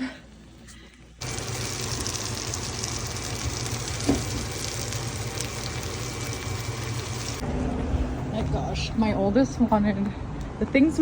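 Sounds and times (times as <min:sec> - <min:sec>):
fish sizzling in oil: 0:01.2 - 0:07.4.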